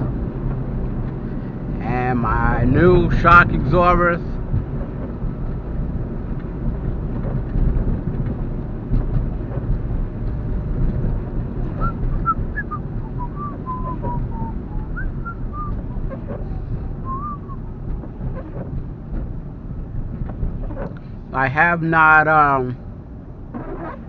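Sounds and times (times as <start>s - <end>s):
car interior rumble on wet road: 0.0s - 21.8s, 22.4s - 24.0s.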